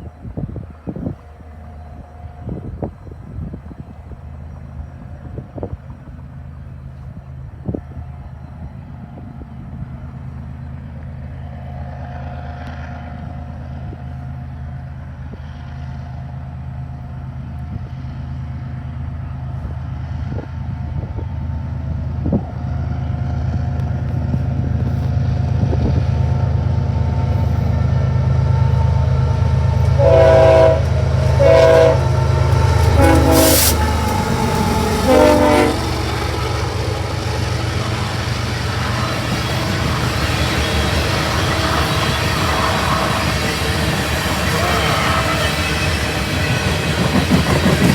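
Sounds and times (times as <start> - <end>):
diesel locomotive engine rumble: 0.0 - 47.9
train air horn blasts: 29.9 - 36.4.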